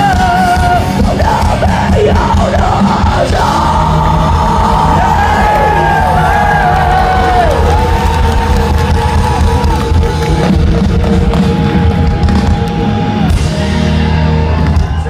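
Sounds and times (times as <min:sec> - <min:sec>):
electric guitar long held notes: 0:00.0 - 0:15.0
rock band playing live: 0:00.0 - 0:15.0.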